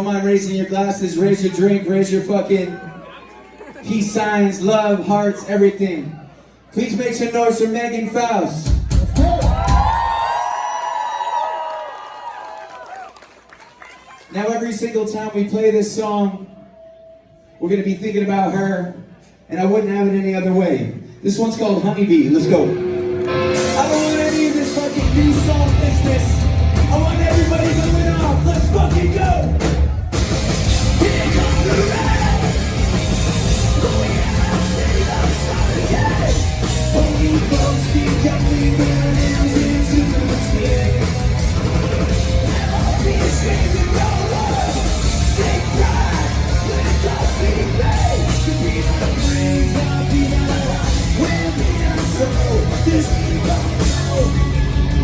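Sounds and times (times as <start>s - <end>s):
punk rock band playing: 22.4s - 55.0s.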